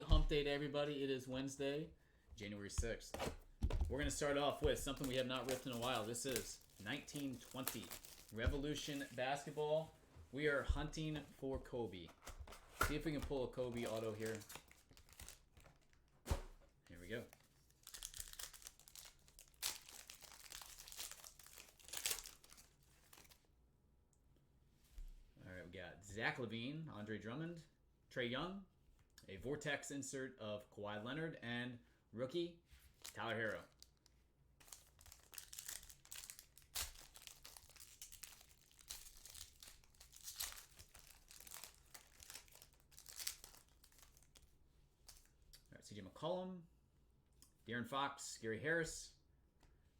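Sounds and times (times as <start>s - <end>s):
wrapper tearing and crinkling: 4.6s - 9.4s, 13.0s - 16.1s, 17.2s - 23.4s, 33.0s - 34.0s, 34.6s - 45.3s.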